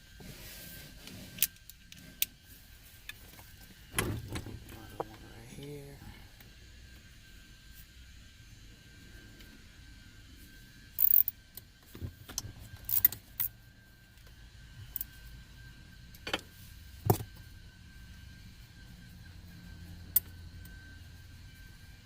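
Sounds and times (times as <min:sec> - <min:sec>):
metallic tool and bolt clicks: 0:12.9 - 0:13.5.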